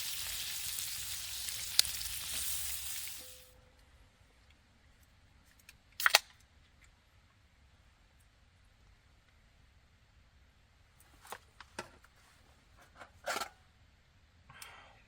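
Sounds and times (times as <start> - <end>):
food sizzling in a pan: 0.0 - 3.6.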